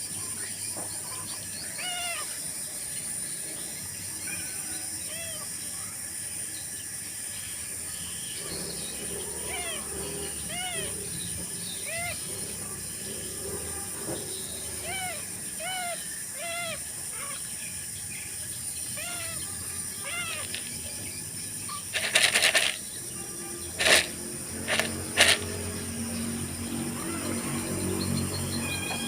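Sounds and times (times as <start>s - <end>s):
cat mewing: 1.7s - 2.4s, 5.0s - 5.5s, 9.4s - 11.0s, 11.8s - 12.3s, 14.8s - 17.5s, 18.9s - 20.8s, 28.6s - 29.0s.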